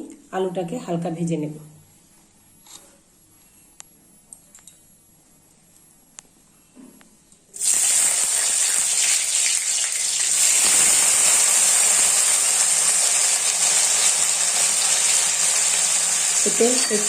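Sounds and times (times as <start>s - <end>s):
potatoes sizzling in hot oil: 7.6s - 17.0s.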